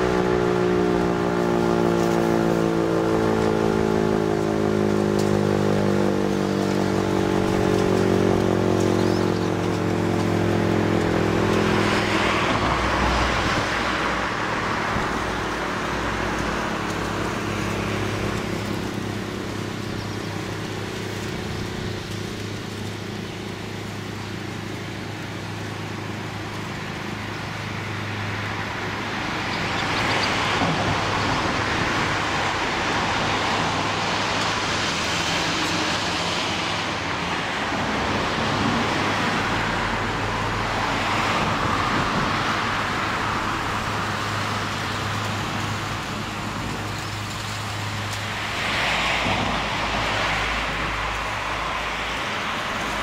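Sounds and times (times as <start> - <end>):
vehicles passing: 0.0 - 53.0.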